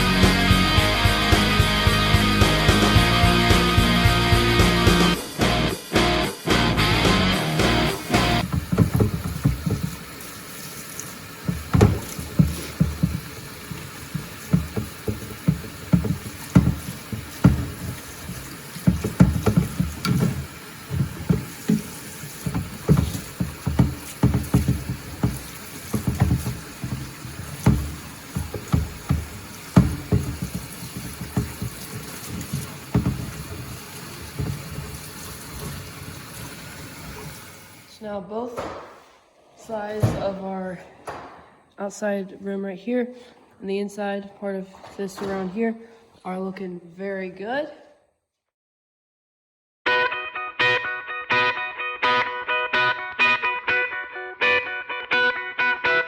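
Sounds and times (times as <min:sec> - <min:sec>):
splashy washing: 0:07.4 - 0:37.9
scrubbing wet wheel rim: 0:07.6 - 0:37.7.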